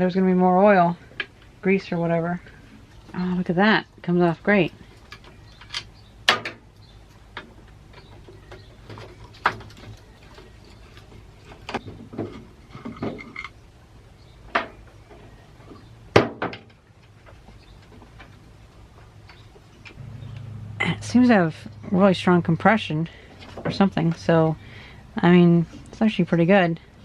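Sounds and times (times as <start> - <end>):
metal parts clicking and knocking: 12.7 - 13.6.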